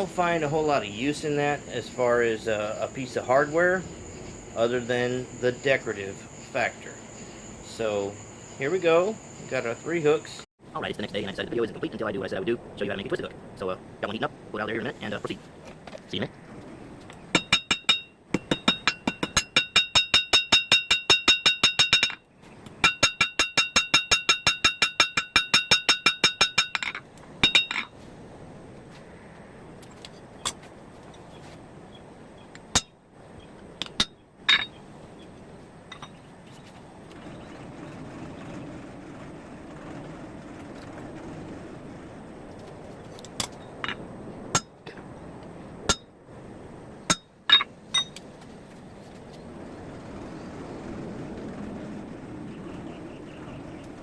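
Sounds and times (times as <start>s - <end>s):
hammer striking on anvil: 17.4s - 22.2s.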